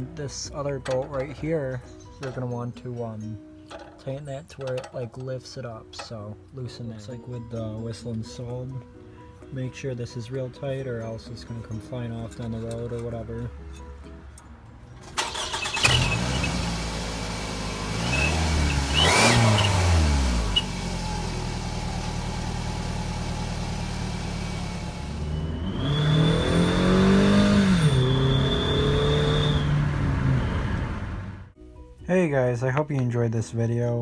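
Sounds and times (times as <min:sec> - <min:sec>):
car engine revving: 0:15.1 - 0:31.6
exhaust turbo whistle: 0:18.0 - 0:21.1, 0:23.9 - 0:31.5.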